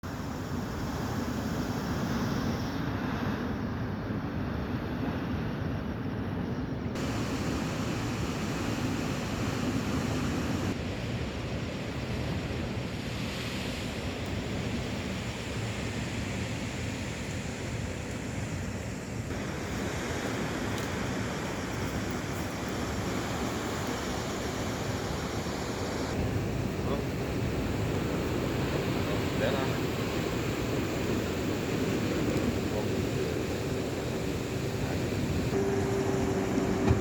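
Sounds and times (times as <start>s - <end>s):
sea surf: 0.0s - 37.0s.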